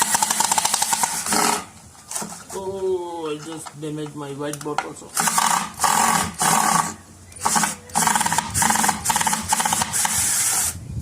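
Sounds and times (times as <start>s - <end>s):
power drill driving a screw: 5.2s - 10.8s.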